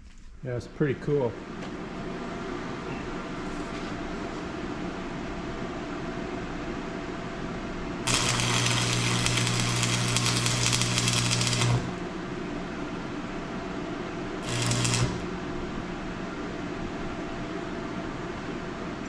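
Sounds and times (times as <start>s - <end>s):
arc welder crackling buzz: 8.0s - 12.3s, 14.4s - 15.6s.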